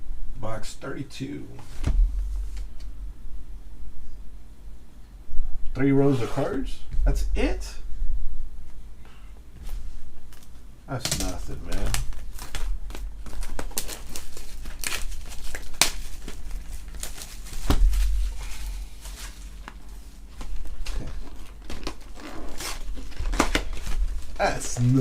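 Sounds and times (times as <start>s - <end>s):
dull thud: 1.8s - 2.5s, 17.6s - 18.4s
wrapper tearing and crinkling: 10.3s - 25.0s.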